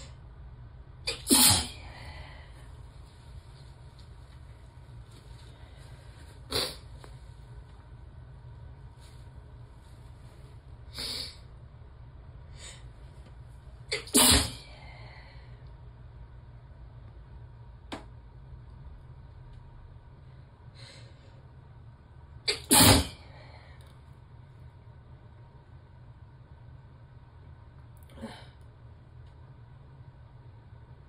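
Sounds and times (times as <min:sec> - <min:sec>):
woman sneezing: 0:01.1 - 0:02.0, 0:13.9 - 0:14.7, 0:22.5 - 0:23.2.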